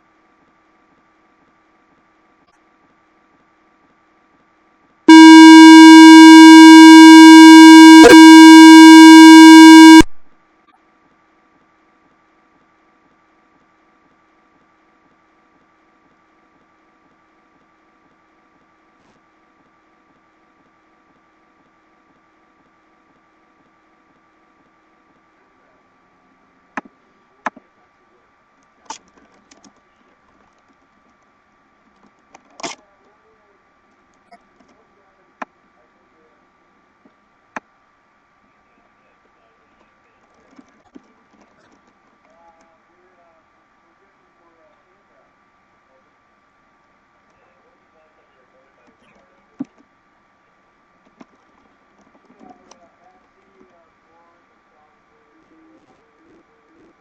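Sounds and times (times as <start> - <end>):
loud buzzy electronic beep: 5.1 - 10.2
thin hum: 5.1 - 10.8.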